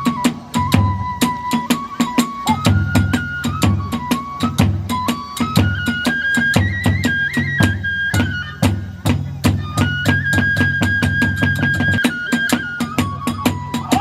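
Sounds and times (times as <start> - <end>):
bamboo flute melody: 0.0 - 14.0
heavy taiko drum beats: 0.0 - 14.0.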